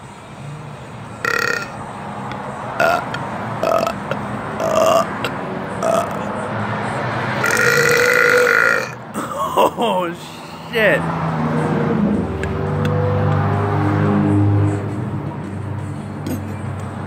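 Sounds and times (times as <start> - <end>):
man burping: 1.2 - 1.8, 2.8 - 6.3, 7.4 - 9.9.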